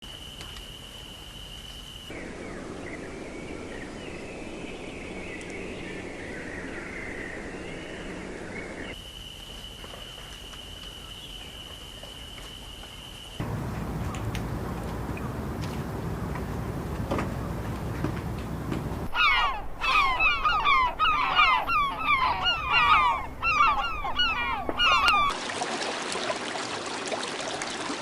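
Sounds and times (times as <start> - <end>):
high insect trill: 0.0 - 5.7, 8.7 - 13.9
wavering bird-like chirps: 19.1 - 25.4.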